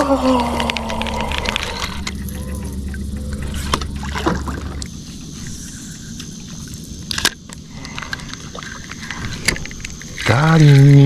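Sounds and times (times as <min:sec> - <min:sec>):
thin high steady tone: 0:00.0 - 0:07.0
low steady hum: 0:00.0 - 0:11.0.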